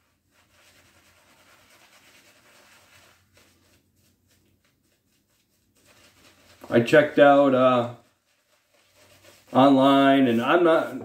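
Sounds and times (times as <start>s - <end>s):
faint scratchy rubbing: 0.0s - 11.0s.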